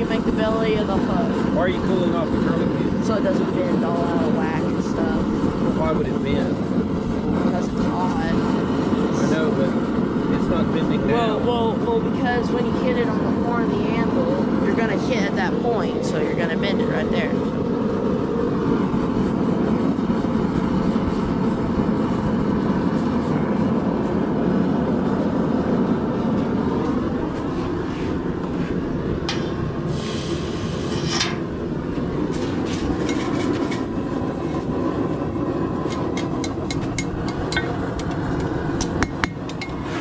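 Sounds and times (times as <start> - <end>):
forge roaring: 0.0 - 40.0
hot metal hissing in water: 29.3 - 31.5.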